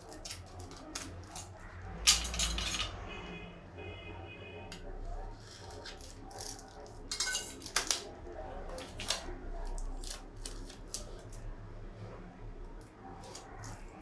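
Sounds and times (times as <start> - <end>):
small hard objects clicking: 0.0 - 3.0.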